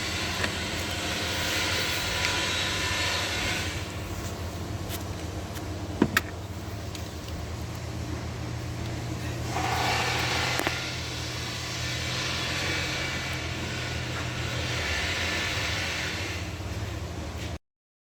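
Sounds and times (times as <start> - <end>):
rushing hissing noise: 0.0 - 4.1, 9.4 - 16.8
car running with low hum: 0.0 - 17.6.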